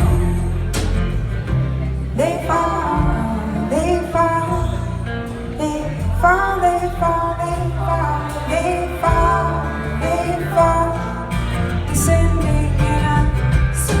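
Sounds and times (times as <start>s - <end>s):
acoustic folk band playing: 0.0s - 14.0s.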